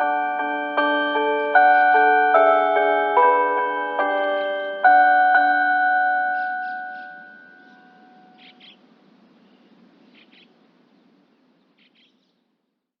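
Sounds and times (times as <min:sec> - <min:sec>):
loudspeaker electronic chime melody: 0:00.0 - 0:08.4
faint high bird chirps: 0:06.3 - 0:12.5.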